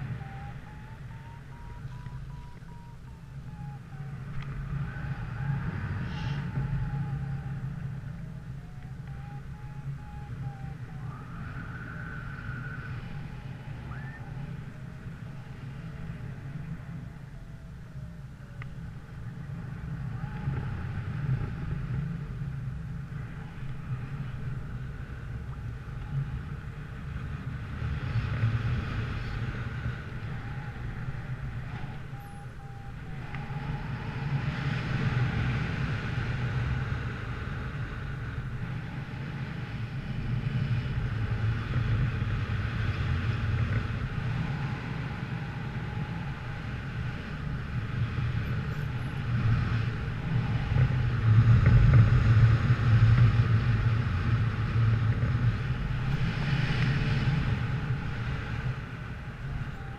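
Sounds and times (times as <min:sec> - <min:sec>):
wind buffeting microphone: 0:00.0 - 0:59.9.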